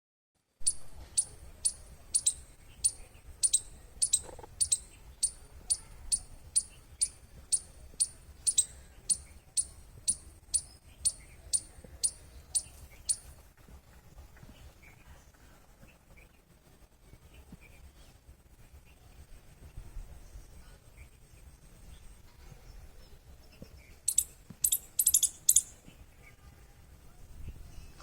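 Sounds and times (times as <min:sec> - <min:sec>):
squirrel chirping: 0:00.6 - 0:13.3, 0:24.1 - 0:26.0.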